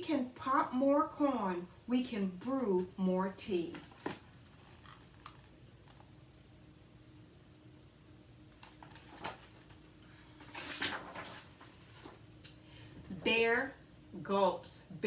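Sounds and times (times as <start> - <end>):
paper page rustling: 3.7 - 6.0, 8.5 - 12.3.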